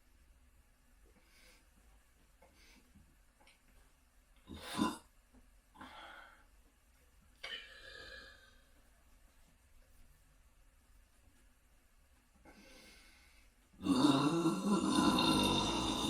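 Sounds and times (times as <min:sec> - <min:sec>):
person burping: 0:04.5 - 0:05.1, 0:13.8 - 0:16.0.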